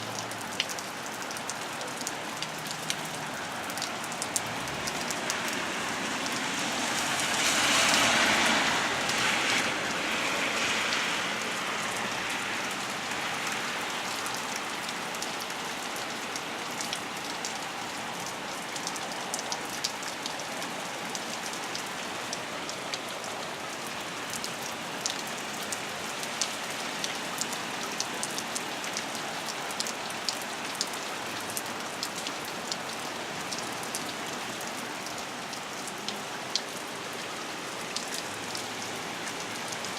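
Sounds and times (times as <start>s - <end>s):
heavy rain with drop ticks: 0.0s - 39.9s
wind-driven rain surge: 5.9s - 12.5s.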